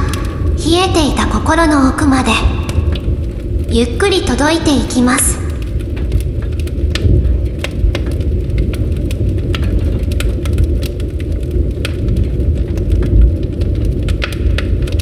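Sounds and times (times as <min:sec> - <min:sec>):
burning wood crackling and popping: 0:00.0 - 0:15.0
low rumble of flames: 0:00.0 - 0:15.0.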